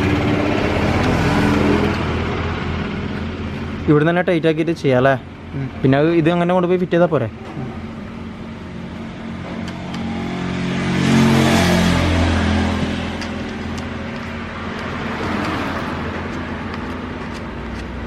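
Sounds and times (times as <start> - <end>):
vehicle engine passing by: 0.0 - 3.1, 9.7 - 17.2.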